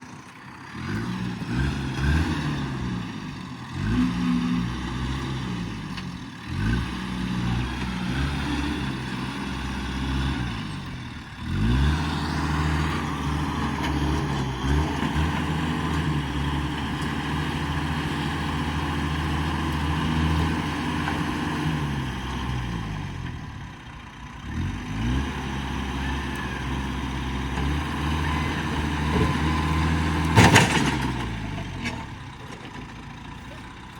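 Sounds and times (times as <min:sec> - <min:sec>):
vehicle engine revving: 0:00.6 - 0:32.2.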